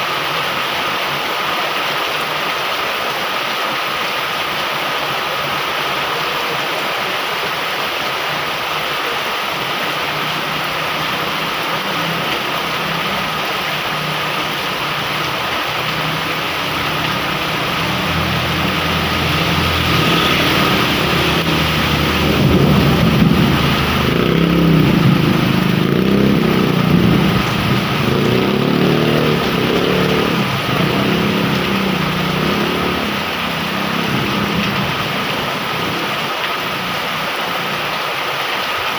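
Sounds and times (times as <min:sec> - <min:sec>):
heavy rain falling: 0:00.0 - 0:38.9
vehicle engine passing: 0:09.7 - 0:38.2.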